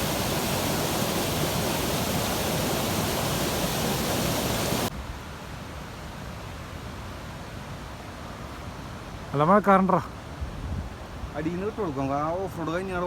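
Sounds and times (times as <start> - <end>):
waterfall rushing: 0.0 - 4.9
steady hiss: 0.0 - 5.5.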